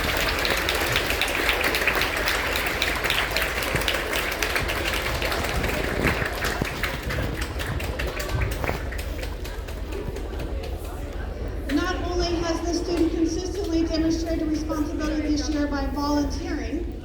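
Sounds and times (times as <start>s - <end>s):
audience applauding: 0.0s - 11.1s.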